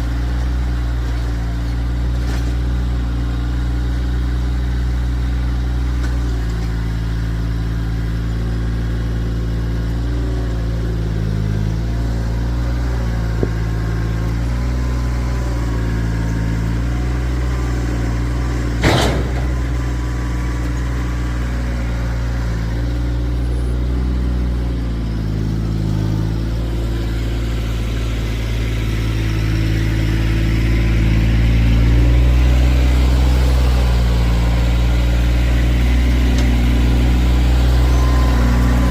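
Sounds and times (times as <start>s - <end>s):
tractor diesel engine running: 0.0s - 38.9s
sharp clank: 18.8s - 19.8s.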